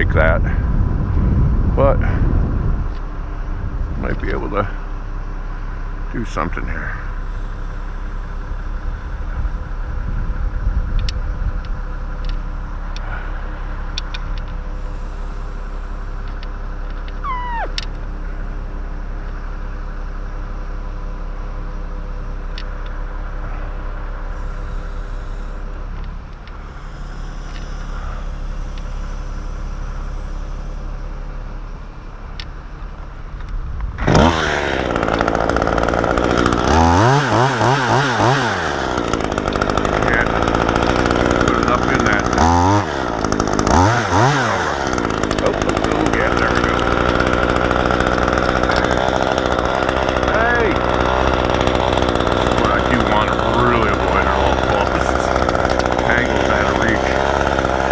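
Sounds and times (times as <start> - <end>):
truck engine running: 0.0 - 57.9
chainsaw revving: 12.8 - 18.4, 22.5 - 31.3, 34.0 - 57.9
falling squeal: 17.2 - 17.8.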